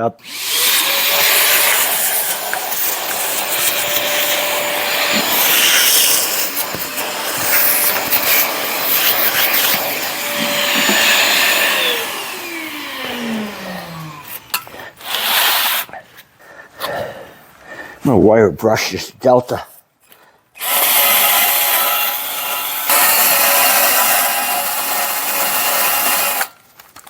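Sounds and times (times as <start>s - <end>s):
vacuum cleaner running: 0.2s - 14.6s
motor winding down whine: 8.8s - 14.5s.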